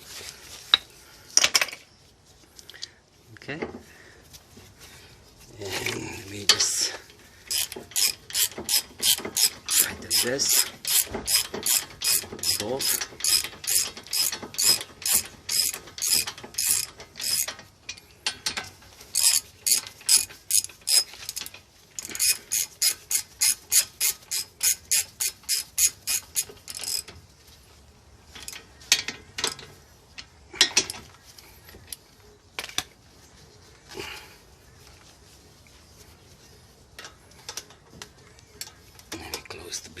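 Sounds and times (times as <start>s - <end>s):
ratchet wrench clicking: 7.5s - 17.6s, 18.2s - 27.1s.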